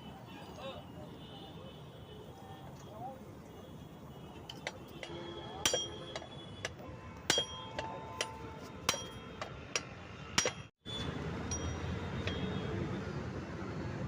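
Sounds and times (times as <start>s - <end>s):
hammer striking steel pipe: 4.5s - 10.7s, 11.5s - 12.6s.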